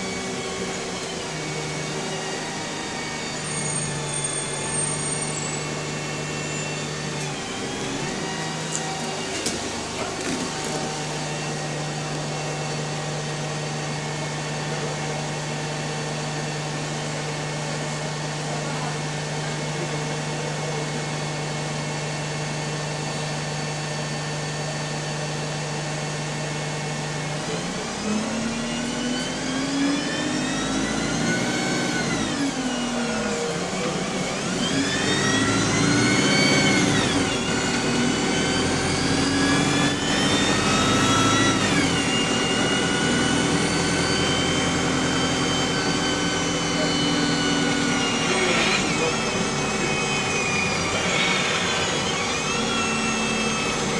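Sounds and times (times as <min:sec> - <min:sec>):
bus engine idling: 0:00.0 - 0:20.8
bus pulling away with gearbox whine: 0:00.0 - 0:53.9.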